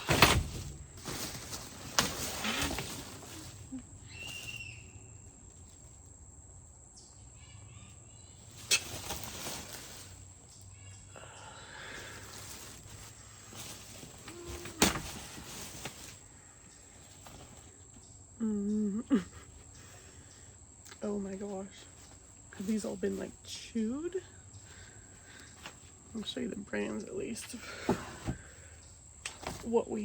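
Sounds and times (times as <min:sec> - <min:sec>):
rustling and clatter of items: 0:00.0 - 0:04.6, 0:08.5 - 0:10.6, 0:12.0 - 0:18.1, 0:24.5 - 0:30.0.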